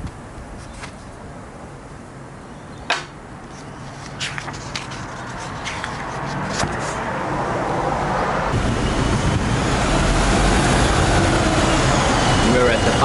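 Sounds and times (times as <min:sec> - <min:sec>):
vehicle rumble: 0:03.1 - 0:13.0.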